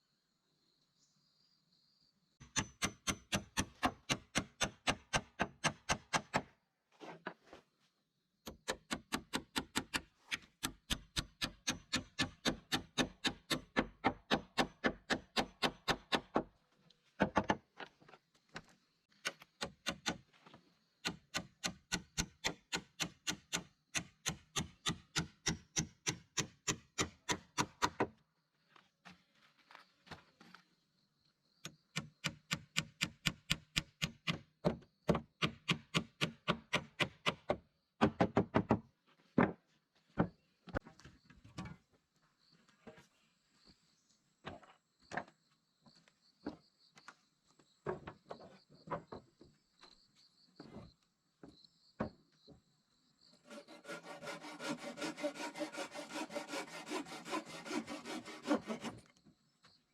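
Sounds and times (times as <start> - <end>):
hand tool striking wood: 2.4 - 6.5, 8.4 - 16.5, 21.0 - 28.1, 31.9 - 38.8.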